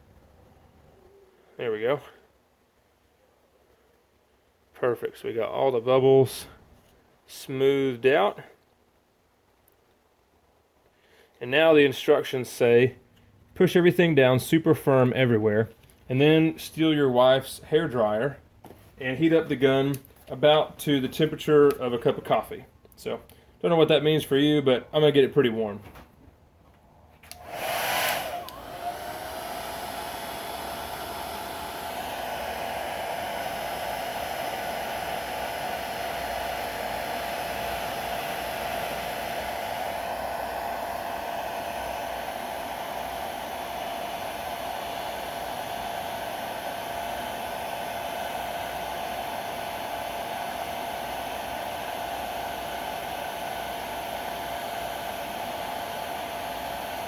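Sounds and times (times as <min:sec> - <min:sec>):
hair dryer running: 0:27.2 - 0:57.0.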